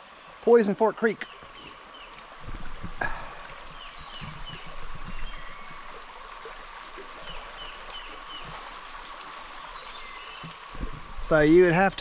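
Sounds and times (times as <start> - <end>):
creek water over rocks: 0.0 - 12.0
bird chirping: 1.2 - 6.2, 9.6 - 11.5.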